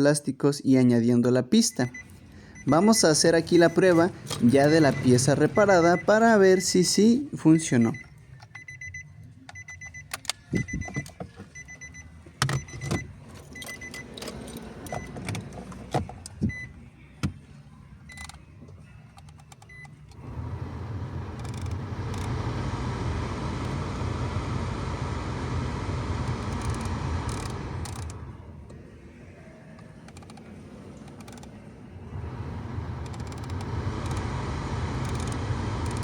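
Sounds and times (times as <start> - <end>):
car blower fan whooshing: 20.2 - 29.3, 30.5 - 36.0.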